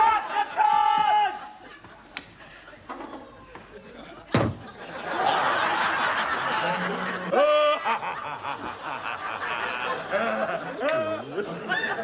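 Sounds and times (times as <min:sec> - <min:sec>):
audience laughter: 0:03.7 - 0:12.0.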